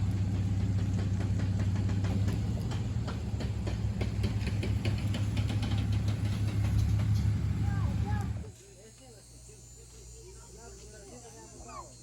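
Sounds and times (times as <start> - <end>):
engine idling: 0.0 - 8.5.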